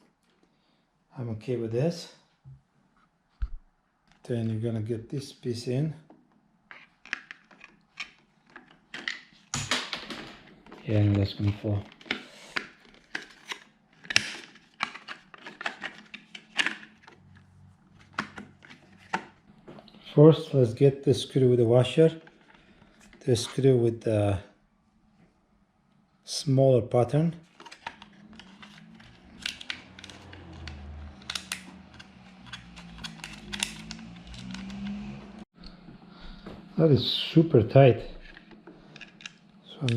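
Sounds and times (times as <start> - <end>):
clicks and knocks of parts handled: 6.1 - 17.2, 27.5 - 35.2, 38.2 - 39.9.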